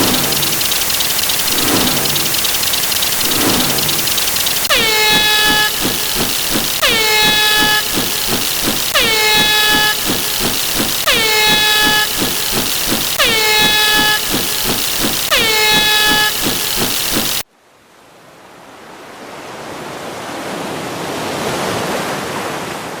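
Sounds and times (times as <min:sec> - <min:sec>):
hiss: 0:00.0 - 0:17.4
horn-like blast: 0:00.0 - 0:17.4
noisy fast clicks: 0:00.0 - 0:17.4.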